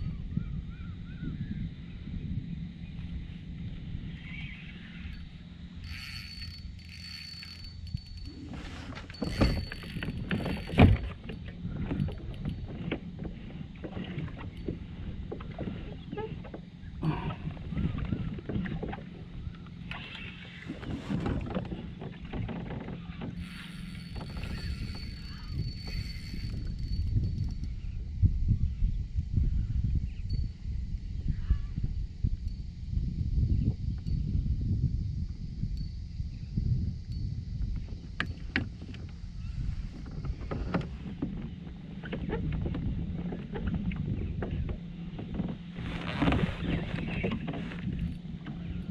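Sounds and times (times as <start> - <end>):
wind rumbling on microphone: 0.0 - 48.9
water sloshing against hull: 5.8 - 27.6, 37.8 - 48.9.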